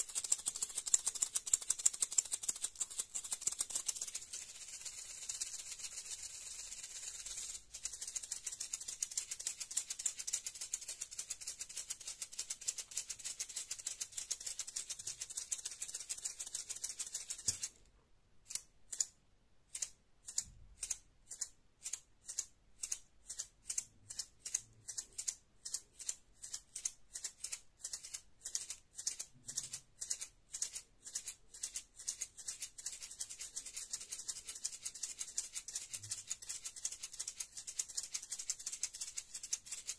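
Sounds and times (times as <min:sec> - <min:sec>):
maracas rattling: 0:00.0 - 0:17.7.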